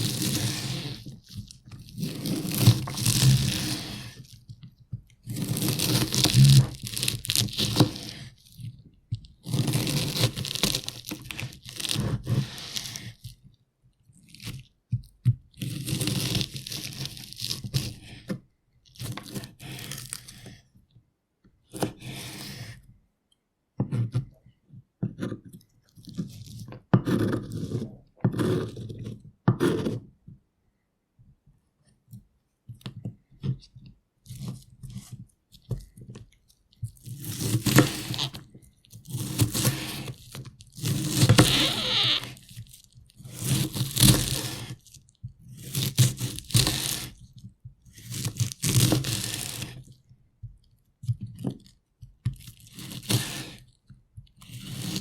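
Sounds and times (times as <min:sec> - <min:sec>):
knife chopping onion on board: 0:27.0 - 0:28.9.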